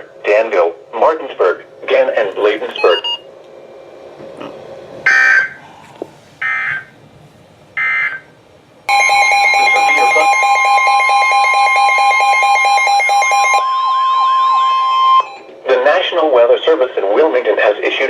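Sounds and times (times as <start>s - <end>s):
harsh data-tone bursts: 8.9s - 15.5s
multi-pitch attention tone: 8.9s - 15.5s.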